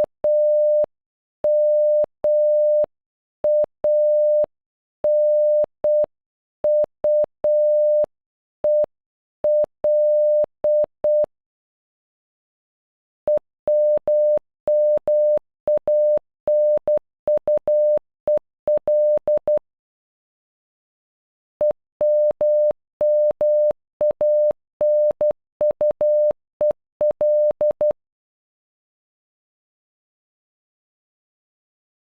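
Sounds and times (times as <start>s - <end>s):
morse code beeps: 0.3s - 0.9s, 1.5s - 2.9s, 3.5s - 4.5s, 5.1s - 6.1s, 6.7s - 8.1s, 9.5s - 11.3s, 13.3s - 19.6s, 21.6s - 28.0s.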